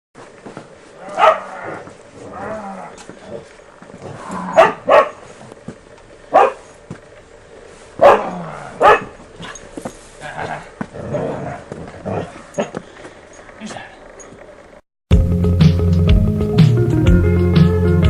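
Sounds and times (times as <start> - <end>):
dog barking: 1.0 - 1.7, 4.5 - 5.3, 6.3 - 6.7, 8.0 - 9.6.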